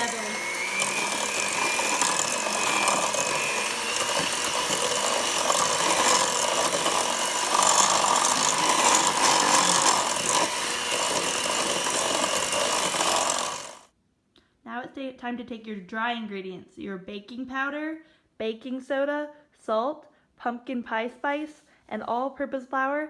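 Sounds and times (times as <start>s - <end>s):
electric hand mixer running: 0.0s - 13.8s.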